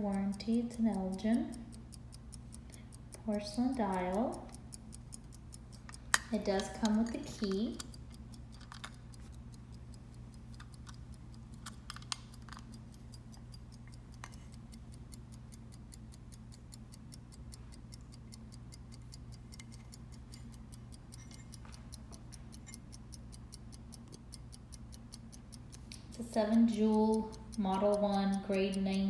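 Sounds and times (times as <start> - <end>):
pocket watch ticking: 0.0 - 29.0.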